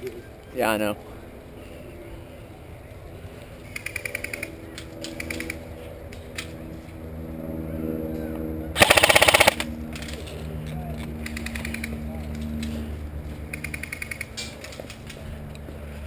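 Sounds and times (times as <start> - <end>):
airsoft rifle bursts: 8.8 - 9.7.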